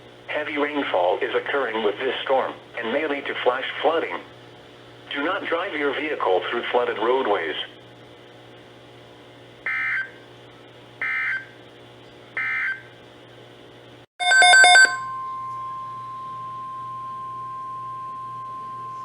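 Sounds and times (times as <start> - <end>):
faint steady hum: 13.9 - 19.0.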